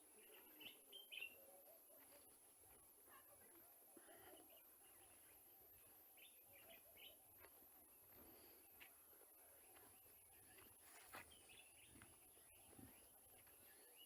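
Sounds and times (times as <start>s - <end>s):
faint bird chirps: 0.1s - 2.3s.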